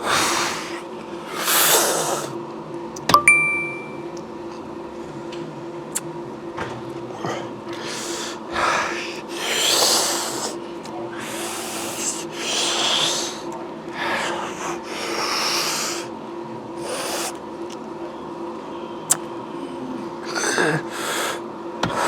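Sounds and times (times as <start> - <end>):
man breathing hard: 0.0 - 2.3, 7.7 - 10.6, 11.2 - 16.1.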